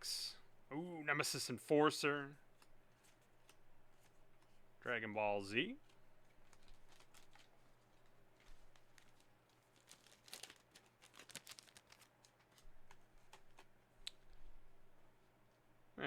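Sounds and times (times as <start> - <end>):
card packs crinkling: 5.4 - 14.7.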